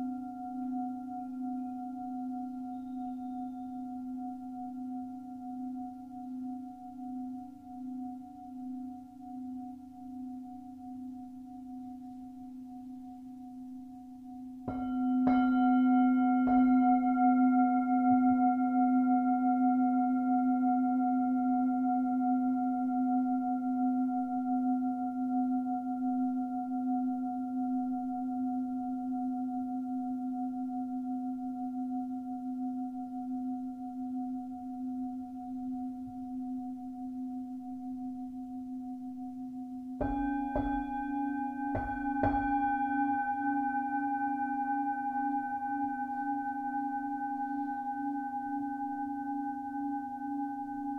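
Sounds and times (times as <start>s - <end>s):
singing bowl ringing: 0.1s - 4.9s, 14.7s - 19.0s, 39.5s - 50.9s.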